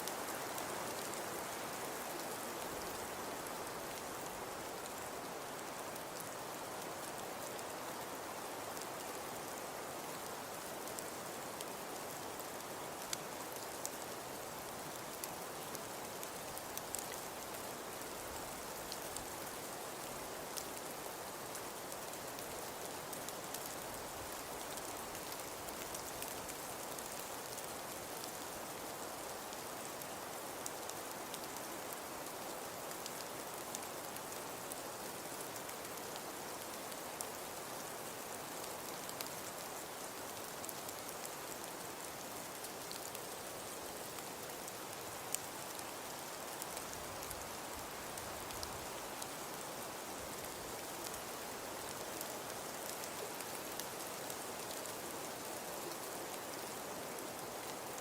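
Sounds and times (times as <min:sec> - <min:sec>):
faint ticks: 0:16.5 - 0:20.0, 0:30.7 - 0:57.8.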